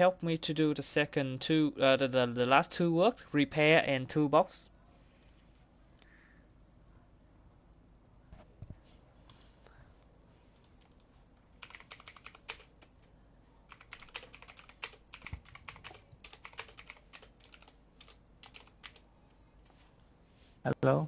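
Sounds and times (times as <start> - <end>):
typing on a computer keyboard: 5.0 - 8.8, 10.0 - 19.6.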